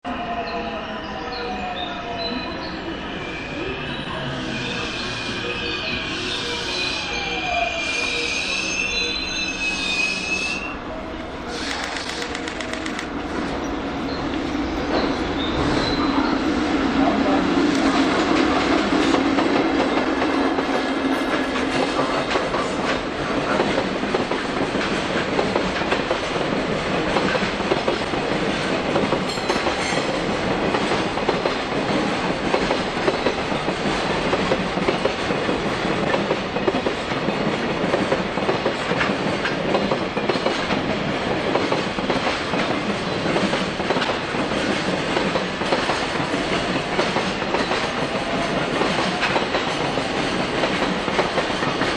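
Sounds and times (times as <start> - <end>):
freight train wheels clicking on rails: 11.4 - 51.9.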